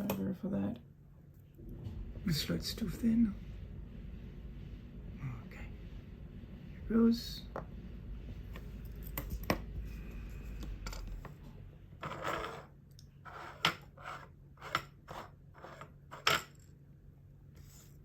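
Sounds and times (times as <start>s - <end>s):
low hum: 0.8s - 12.2s.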